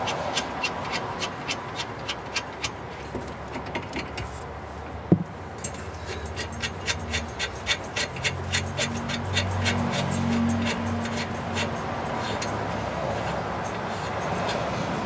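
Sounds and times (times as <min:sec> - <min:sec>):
ratchet wrench clicking: 0:05.6 - 0:15.0.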